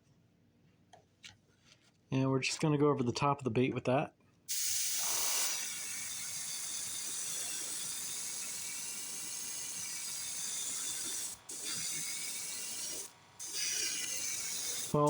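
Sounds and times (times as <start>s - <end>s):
airbrush spraying hiss: 4.5s - 15.0s.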